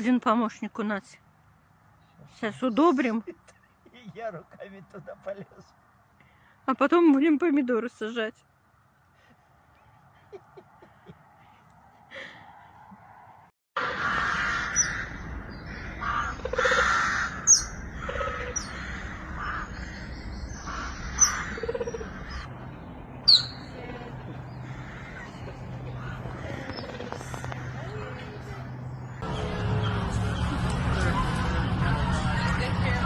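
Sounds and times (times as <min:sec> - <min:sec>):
steady background noise: 0:13.3 - 0:33.0
bird chirping: 0:17.4 - 0:18.8, 0:19.4 - 0:30.6.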